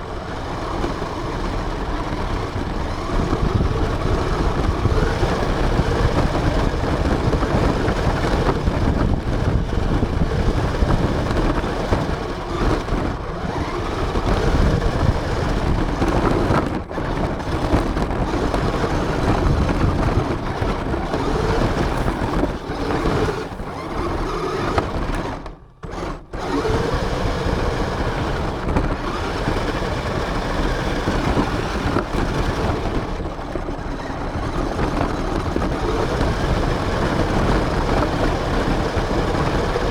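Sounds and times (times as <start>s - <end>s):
rattling and rumbling over ground: 0.0s - 39.9s
rc car motor running: 0.3s - 39.9s.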